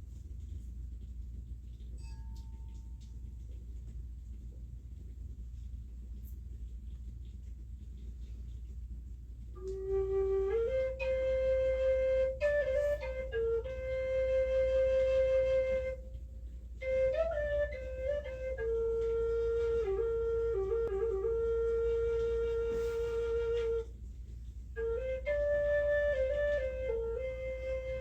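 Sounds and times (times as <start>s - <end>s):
flute playing slow melody: 9.6s - 24.1s, 24.8s - 28.0s.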